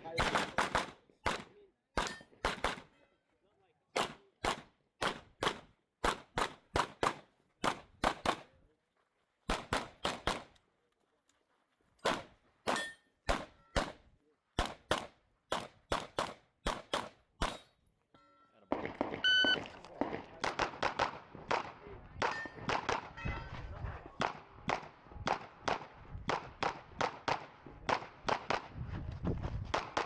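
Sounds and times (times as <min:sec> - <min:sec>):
pistol shots: 0:00.0 - 0:02.9, 0:04.0 - 0:08.5, 0:09.5 - 0:10.6, 0:12.0 - 0:14.0, 0:14.6 - 0:17.7, 0:18.7 - 0:23.2, 0:24.2 - 0:28.7.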